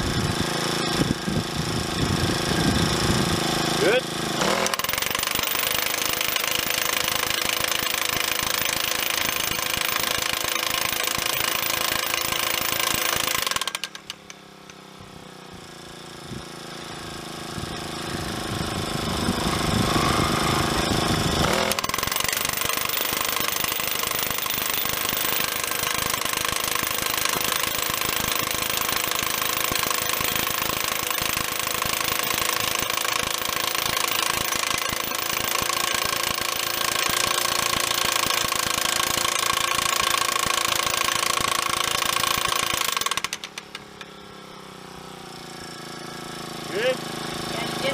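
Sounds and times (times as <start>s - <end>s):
powered hammer driving steel post: 4.3s - 14.8s, 19.2s - 44.2s.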